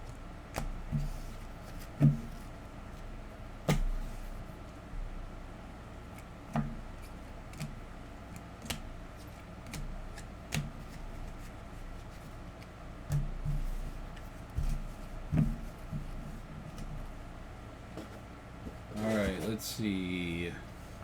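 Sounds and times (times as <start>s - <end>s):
cards clicking and tapping: 8.4s - 8.9s.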